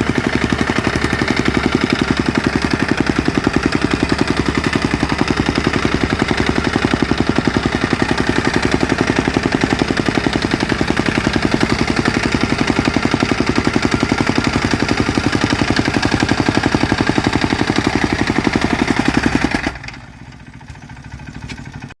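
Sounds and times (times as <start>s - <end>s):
soil compactor engine pounding: 0.0s - 22.0s.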